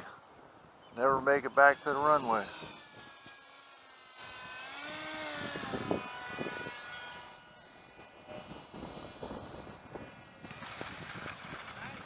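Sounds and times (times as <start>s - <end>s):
electric ducted fan whining: 0.0s - 12.0s
wind rumble on microphone: 5.3s - 6.8s, 8.2s - 12.0s.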